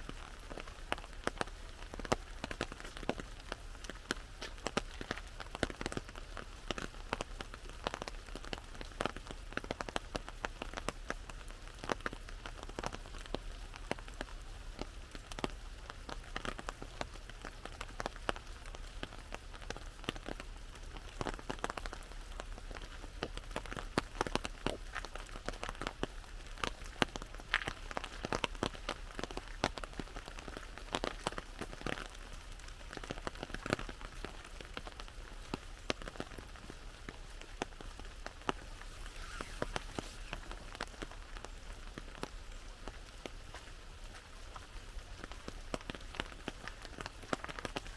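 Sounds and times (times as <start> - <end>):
rain drops hitting an umbrella: 0.0 - 47.9.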